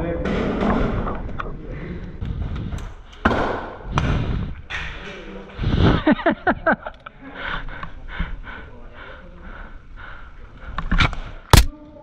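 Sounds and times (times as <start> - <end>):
person breathing hard: 3.8 - 4.7, 7.2 - 11.4.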